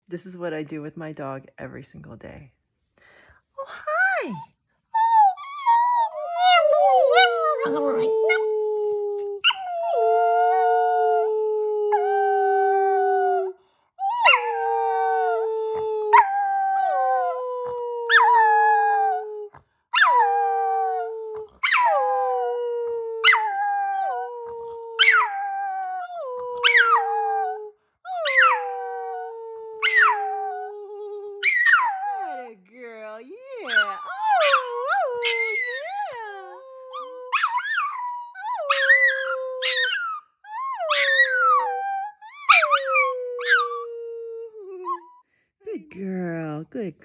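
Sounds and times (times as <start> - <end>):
dog howling: 5.0 - 32.5, 33.6 - 45.0
person howling: 5.7 - 19.5, 33.8 - 37.8.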